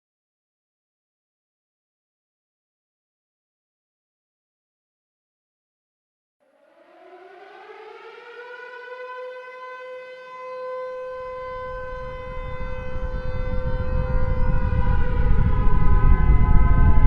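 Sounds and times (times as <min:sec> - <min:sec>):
warning siren: 0:06.4 - 0:17.0
low rumble: 0:11.2 - 0:17.0.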